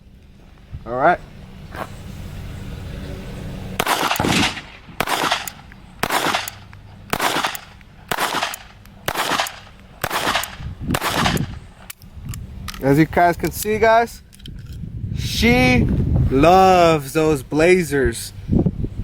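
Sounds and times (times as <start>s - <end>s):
pistol shots with echo: 3.8s - 11.6s.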